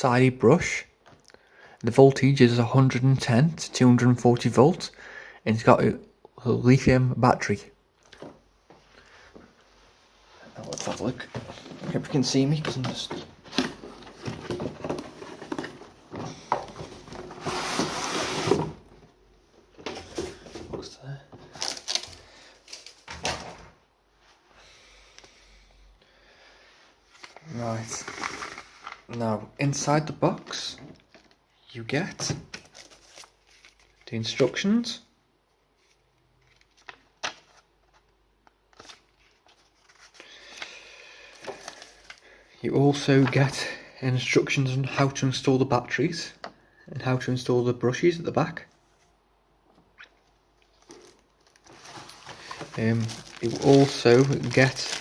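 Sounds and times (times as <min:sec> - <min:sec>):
cardboard rustling and scraping: 0:10.6 - 0:19.0, 0:50.8 - 0:55.0
faint paper rustling: 0:27.0 - 0:29.4, 0:32.5 - 0:34.3, 0:35.7 - 0:42.3, 0:50.7 - 0:55.0.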